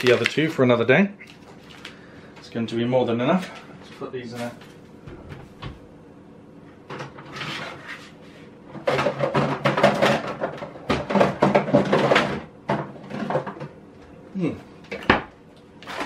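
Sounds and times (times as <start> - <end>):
packaging rustling and clattering: 0.0 - 0.6
steady low hum: 0.0 - 11.6.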